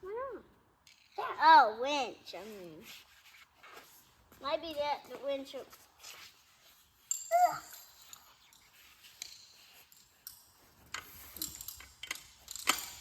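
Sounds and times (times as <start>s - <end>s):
metal tools clinking and rattling: 7.0s - 13.0s.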